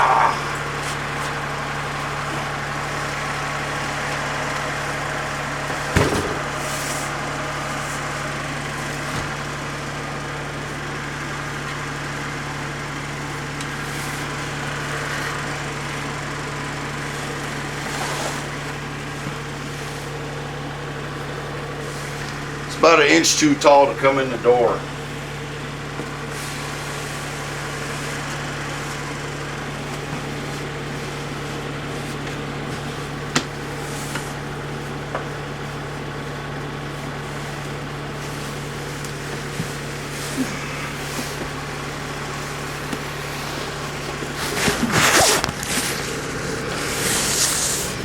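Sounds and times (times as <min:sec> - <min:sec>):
machine hum: 0:00.0 - 0:48.0.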